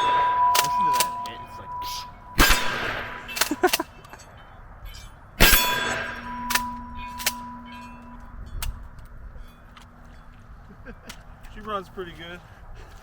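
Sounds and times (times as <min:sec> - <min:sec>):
steel target ringing: 0:00.0 - 0:03.6, 0:04.9 - 0:10.3
sharp metallic clacks: 0:00.0 - 0:09.1
shotgun shots: 0:02.4 - 0:03.6, 0:05.4 - 0:07.4.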